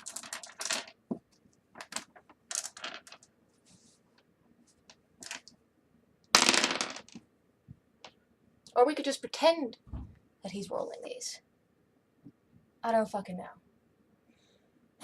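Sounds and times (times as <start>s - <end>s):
dice clattering: 0.0s - 1.2s, 1.8s - 3.3s, 4.9s - 5.6s, 6.3s - 7.3s.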